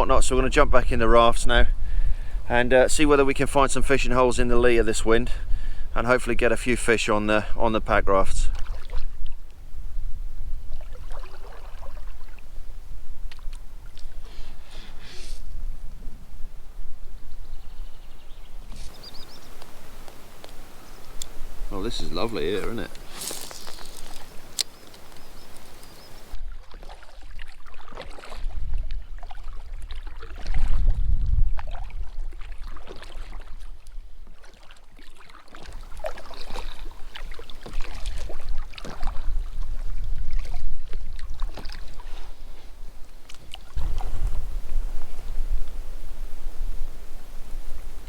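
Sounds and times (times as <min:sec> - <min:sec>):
wind rumble on microphone: 0:00.0 - 0:26.6, 0:28.4 - 0:34.2, 0:35.8 - 0:48.0
paddle splashing in water: 0:08.4 - 0:09.6, 0:10.4 - 0:15.5, 0:17.7 - 0:48.0
water dripping off paddle: 0:18.7 - 0:27.0, 0:35.2 - 0:42.2.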